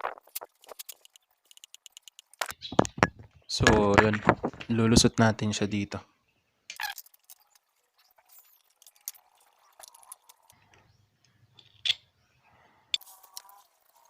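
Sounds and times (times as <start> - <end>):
handlebar parts clicking and rattling: 0.0 - 4.7, 6.7 - 10.9.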